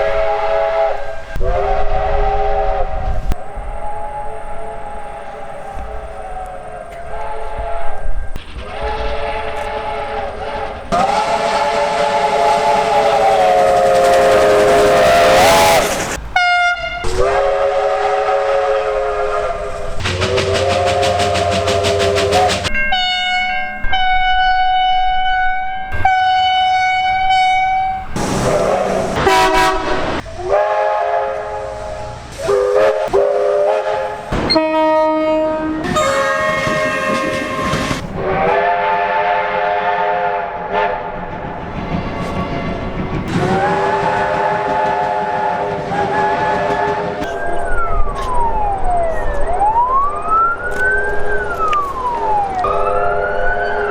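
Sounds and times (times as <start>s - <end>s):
high single-pitch train horns: 6.9s - 41.1s, 43.4s - 47.6s
train horn chime chords: 16.4s - 19.6s, 20.2s - 28.1s, 28.9s - 41.0s.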